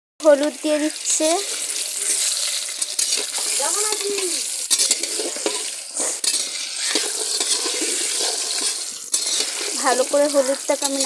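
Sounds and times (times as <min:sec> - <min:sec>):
potatoes sizzling in hot oil: 0:00.2 - 0:11.0.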